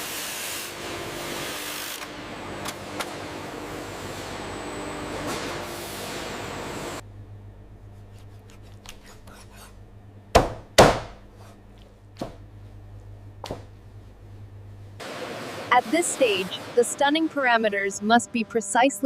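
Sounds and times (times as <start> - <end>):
steady low hum: 2.2 - 19.0
sharp knocks: 10.3 - 11.2.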